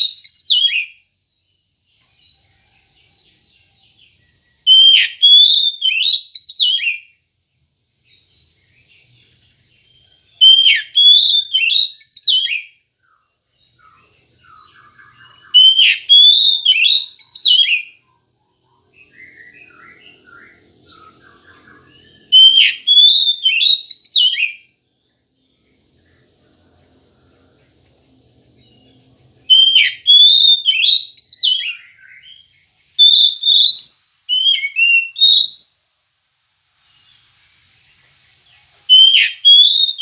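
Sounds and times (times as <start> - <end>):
bird singing whistled phrases: 0.0 - 1.0, 4.6 - 7.2, 8.1 - 18.1, 18.7 - 24.7, 29.4 - 35.9, 38.2 - 40.0
faint soft bird chirps: 0.0 - 36.0, 36.6 - 40.0.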